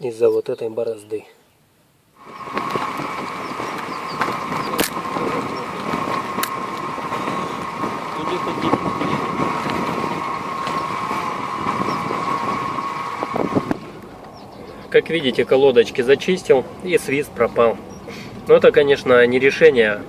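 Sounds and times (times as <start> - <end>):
car tyre and running noise: 2.2 - 15.0
constant hum: 2.2 - 18.4.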